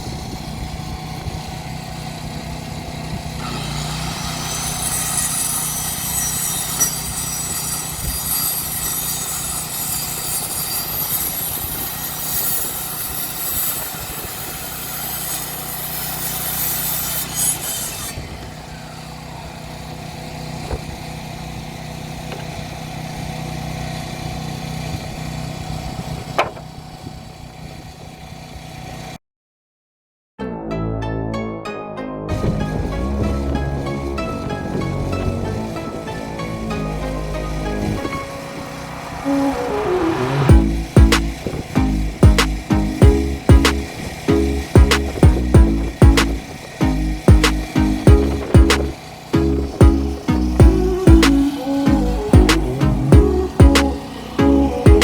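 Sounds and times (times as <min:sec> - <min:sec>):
engine running steadily: 0:32.9 - 0:55.0
sharp knock: 0:41.0 - 0:43.8, 0:47.3 - 0:48.9.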